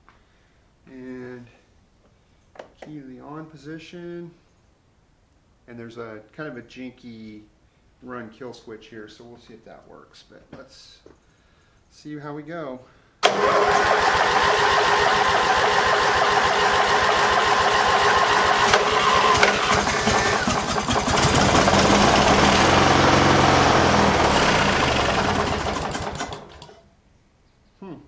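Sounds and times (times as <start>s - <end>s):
lawn tractor engine running: 13.2s - 26.8s.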